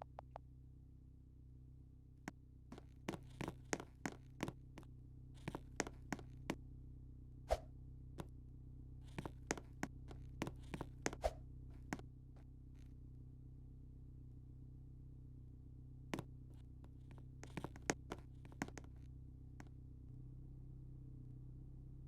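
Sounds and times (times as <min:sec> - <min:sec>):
light taps and clicks: 0:00.0 - 0:00.5, 0:16.2 - 0:19.7
steady low hum: 0:00.0 - 0:22.0
thumps: 0:09.1 - 0:12.0, 0:17.0 - 0:19.0.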